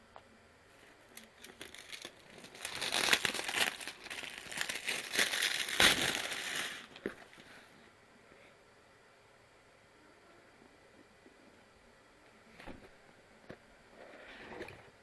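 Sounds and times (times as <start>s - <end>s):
packaging rustling and crackling: 0.7s - 7.6s.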